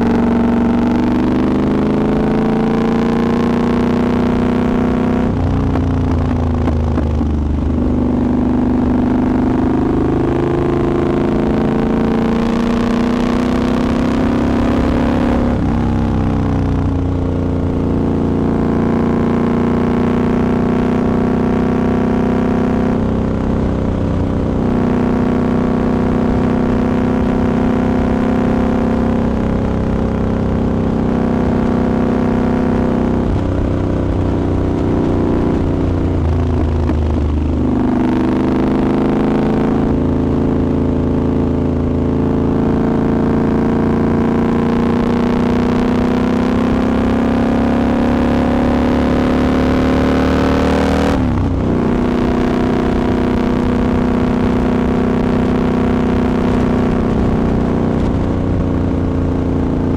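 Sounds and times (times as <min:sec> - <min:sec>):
motorcycle engine while riding: 0:00.0 - 0:59.9
rush of wind: 0:50.7 - 0:59.0.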